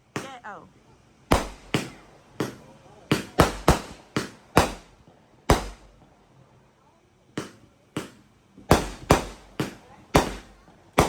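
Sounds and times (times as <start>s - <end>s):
fireworks bangs: 1.3s - 6.1s, 7.4s - 11.0s.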